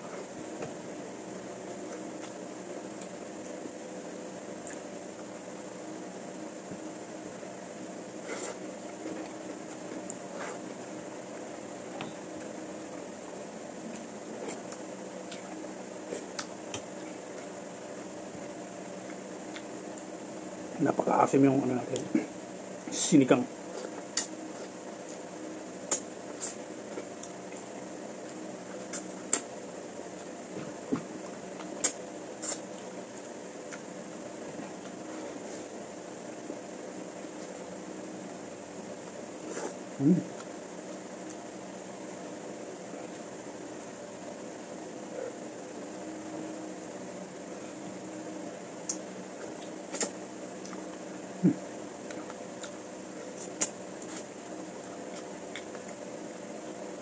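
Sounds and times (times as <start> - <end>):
steady low hum: 0.0 - 57.0
person eating: 8.1 - 10.8, 13.8 - 18.0, 19.0 - 20.1, 23.6 - 37.7, 39.3 - 41.4, 48.8 - 56.8.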